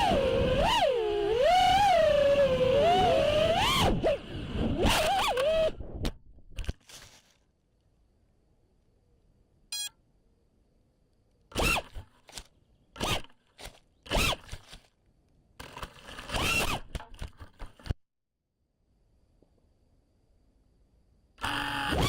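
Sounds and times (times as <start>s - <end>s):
drone motors revving and whining: 0.0s - 5.8s, 21.4s - 22.0s
short beep: 9.7s - 10.0s.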